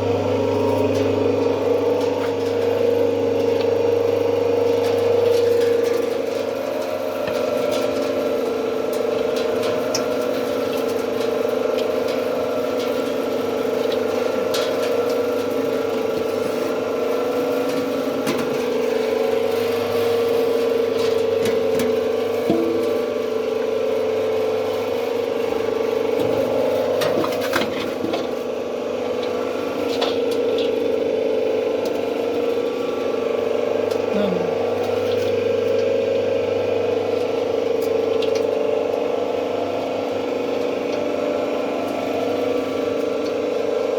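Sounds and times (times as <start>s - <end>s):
machine mechanical hum: 0.0s - 43.9s.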